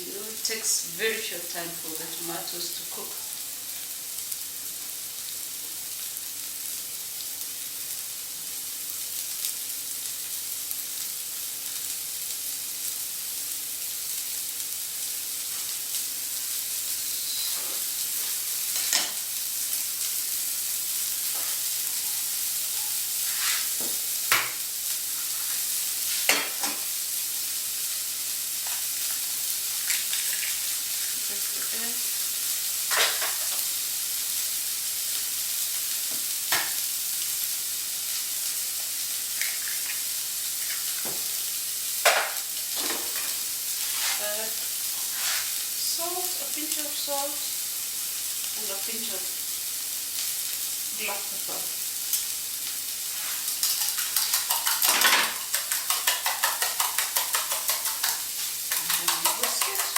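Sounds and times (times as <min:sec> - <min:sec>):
vegetables sizzling in oil: 0:00.0 - 0:59.9
utensil clicking and scraping pan: 0:53.3 - 0:59.9.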